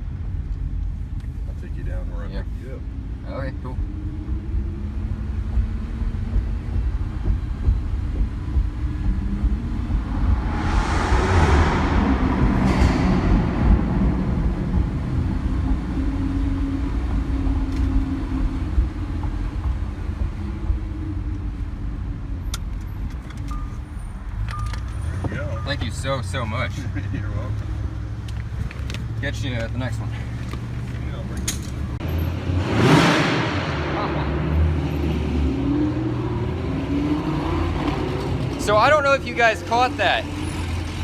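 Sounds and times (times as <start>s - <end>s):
car engine rumble in cabin: 0.0s - 33.0s
rushing noise: 6.8s - 17.3s.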